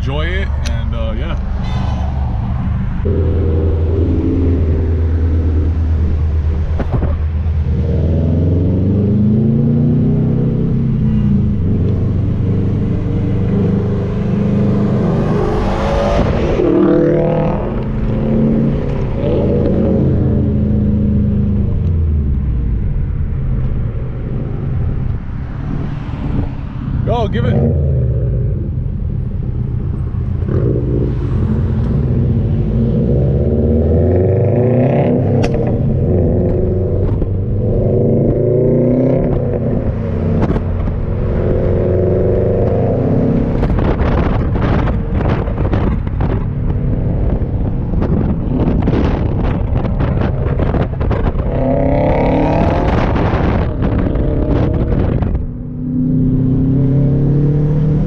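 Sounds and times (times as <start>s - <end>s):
car engine accelerating hard: 30.0s - 58.0s.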